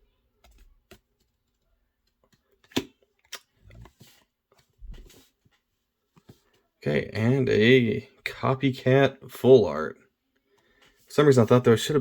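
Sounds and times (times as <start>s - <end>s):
soft rustle of cards: 0.1s - 6.8s, 10.3s - 12.0s
cards clicking and tapping: 0.4s - 5.2s.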